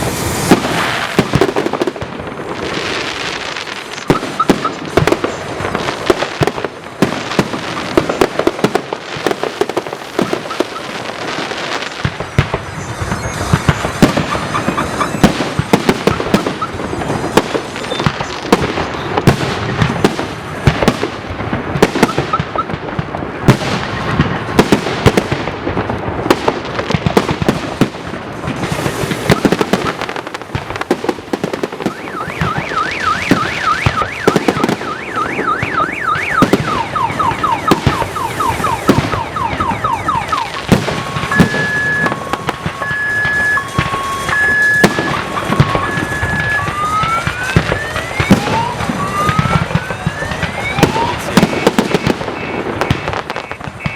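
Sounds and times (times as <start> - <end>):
fireworks bangs: 0.0 - 53.9
electronic alarm: 4.1 - 4.8, 10.1 - 11.2, 12.6 - 16.9, 29.2 - 30.0, 31.8 - 53.9.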